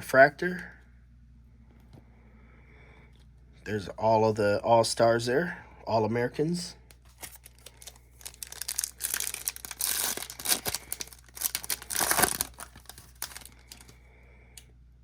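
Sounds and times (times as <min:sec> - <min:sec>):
foil wrapper tearing and crinkling: 0:07.1 - 0:14.0.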